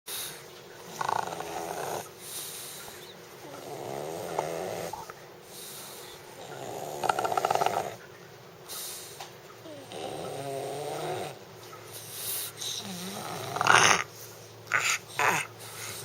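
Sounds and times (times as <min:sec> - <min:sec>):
dog snoring: 0:00.9 - 0:02.5, 0:03.4 - 0:08.0, 0:09.6 - 0:11.4, 0:12.2 - 0:14.1, 0:14.7 - 0:16.0.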